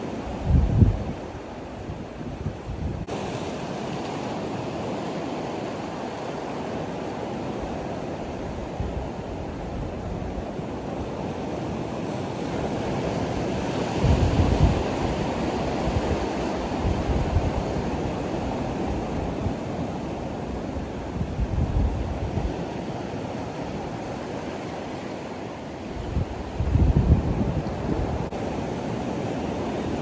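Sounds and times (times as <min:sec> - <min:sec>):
wind buffeting microphone: 0:00.3 - 0:03.1, 0:08.2 - 0:24.4, 0:25.8 - 0:30.0
surf washing against rocks: 0:03.0 - 0:30.0.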